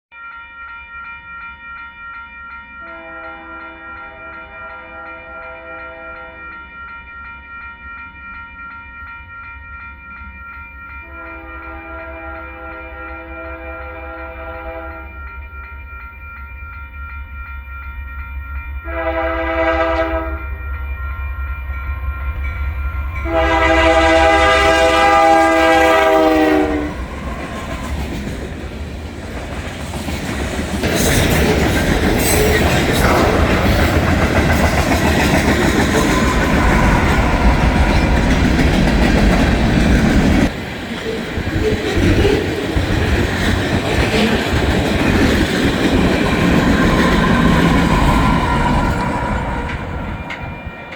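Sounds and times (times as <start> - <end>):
train air horn: 2.8 - 6.4, 11.0 - 15.2, 18.9 - 20.5, 23.2 - 28.0
locomotive engines rumbling: 21.9 - 50.9
train wheels clicking on rails: 26.0 - 50.9.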